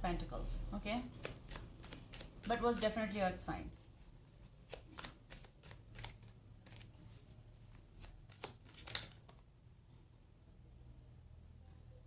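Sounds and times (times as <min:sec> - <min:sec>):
cards being shuffled: 0:00.8 - 0:03.0, 0:03.8 - 0:09.4.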